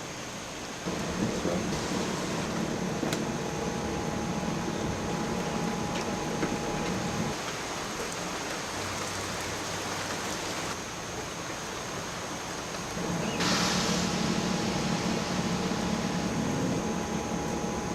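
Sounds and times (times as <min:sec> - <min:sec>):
heavy rain hissing: 0:00.0 - 0:17.9.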